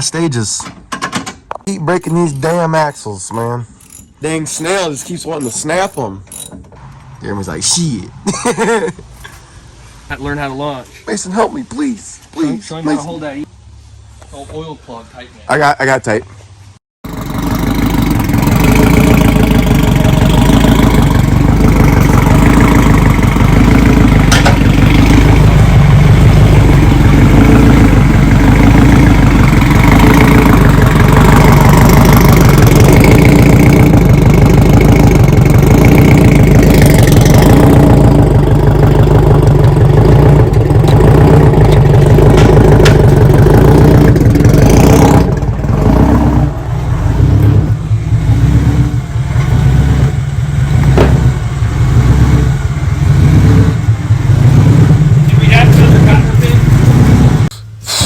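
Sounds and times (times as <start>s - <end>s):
car engine running: 17.0s - 58.0s.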